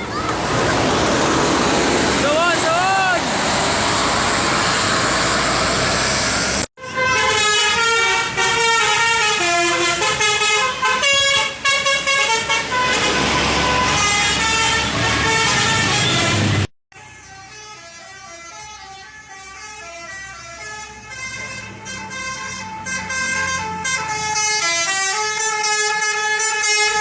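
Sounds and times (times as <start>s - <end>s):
bus horn playing a melody: 6.8s - 27.0s.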